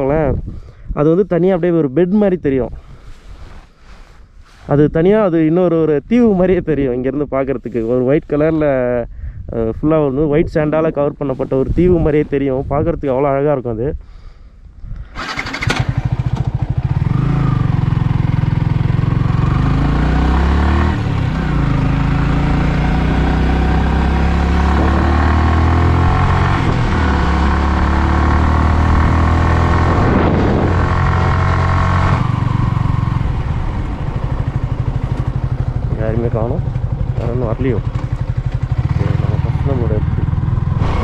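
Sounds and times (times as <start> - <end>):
motorcycle engine revving: 15.2 - 41.0.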